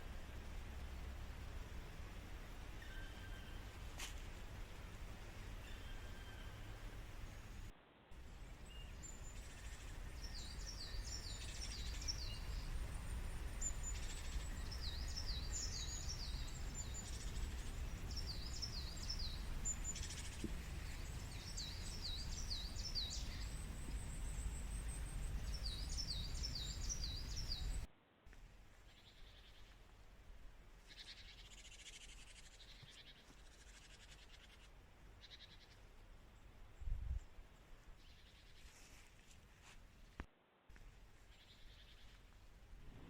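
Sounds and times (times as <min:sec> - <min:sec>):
low background rumble: 0:00.0 - 0:32.7
songbird singing: 0:00.0 - 0:38.9, 0:40.1 - 0:43.0.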